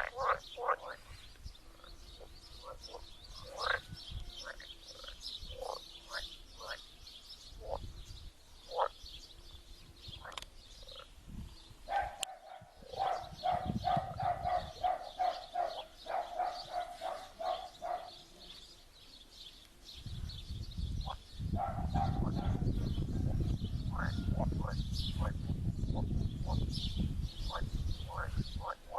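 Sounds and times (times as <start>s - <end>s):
frogs croaking: 0.0s - 6.9s, 7.6s - 7.9s, 8.7s - 9.0s, 10.1s - 11.2s, 11.9s - 18.1s, 23.9s - 25.4s, 27.5s - 28.9s
birds calling: 0.0s - 28.9s
distant dog barking: 11.9s - 18.3s, 21.5s - 22.8s.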